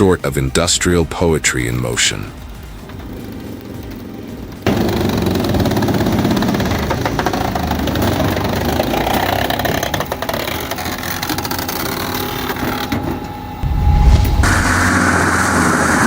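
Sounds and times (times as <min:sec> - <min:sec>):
deep rumble: 0:13.6 - 0:15.4.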